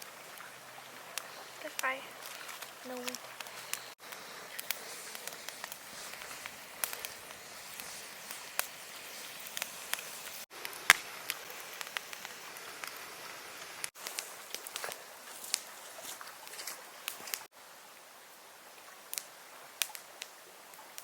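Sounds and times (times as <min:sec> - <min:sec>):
steady hiss: 0:00.0 - 0:21.0
sharp crackles and clicks: 0:01.1 - 0:17.5, 0:19.1 - 0:21.0
loud snap: 0:10.6 - 0:13.0.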